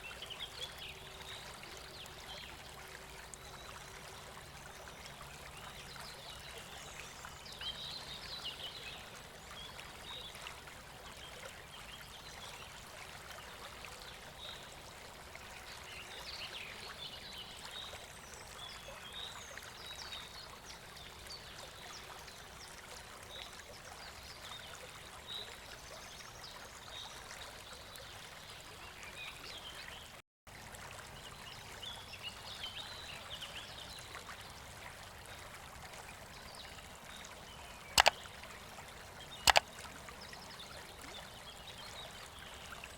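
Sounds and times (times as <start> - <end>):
birds chirping: 37.8 - 38.2.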